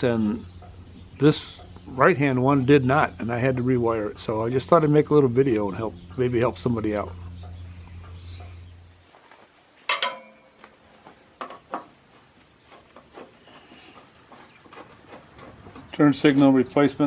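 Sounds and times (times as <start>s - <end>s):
low hum: 0.0s - 9.1s
metallic clink with ring: 9.9s - 10.7s.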